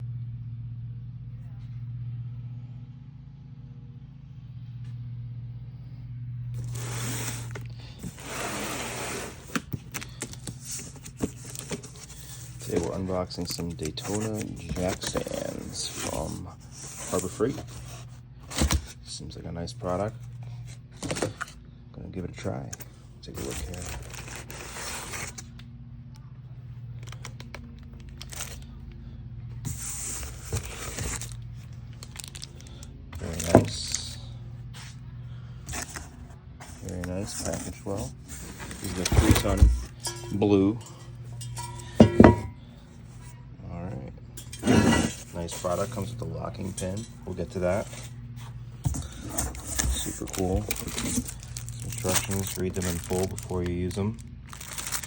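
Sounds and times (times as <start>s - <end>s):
steady low hum: 0.0s - 55.0s
cardboard tearing and scraping: 6.6s - 19.1s, 23.3s - 25.5s, 29.6s - 32.6s, 35.7s - 40.0s, 44.6s - 55.0s
box rustling and knocking: 9.3s - 19.0s, 36.7s - 40.0s, 41.8s - 42.6s, 48.8s - 53.5s.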